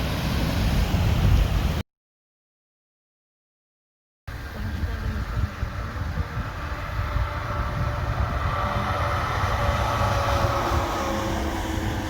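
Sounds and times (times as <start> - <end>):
vehicle engine rumble: 4.3 - 12.0
vehicle whine: 4.3 - 12.0.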